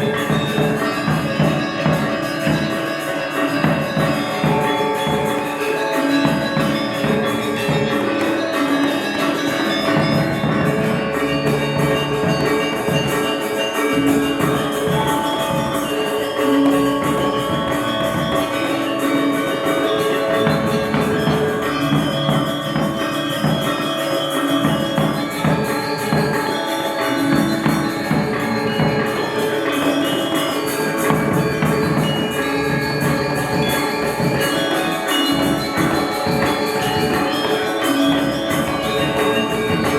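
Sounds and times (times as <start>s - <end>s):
gamelan gong ensemble playing: 0.0s - 39.9s.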